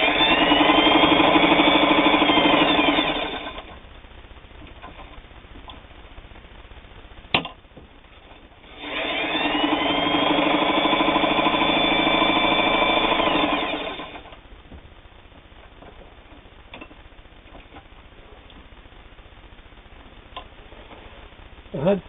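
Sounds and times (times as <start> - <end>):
sewing machine running: 0.0 - 3.7, 8.6 - 14.4.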